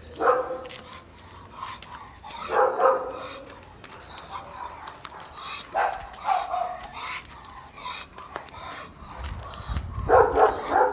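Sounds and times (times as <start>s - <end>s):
dog barking: 0.1s - 0.7s, 2.4s - 3.5s, 5.0s - 6.9s, 10.0s - 10.9s.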